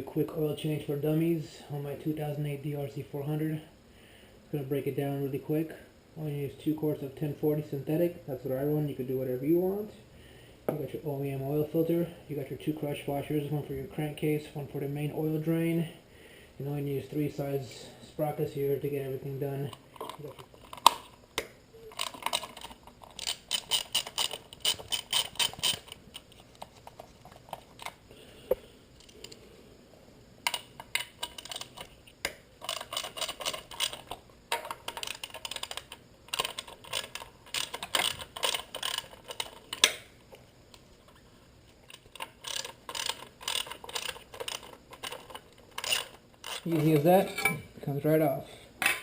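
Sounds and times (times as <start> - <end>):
ratchet wrench clicking: 42.2 - 45.2.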